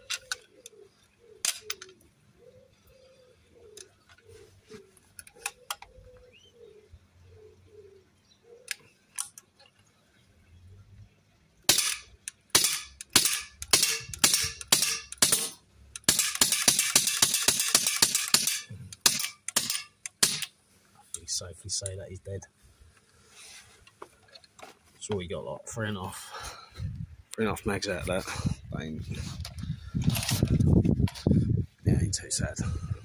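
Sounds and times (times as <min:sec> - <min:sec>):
airgun shots: 0:11.7 - 0:20.5.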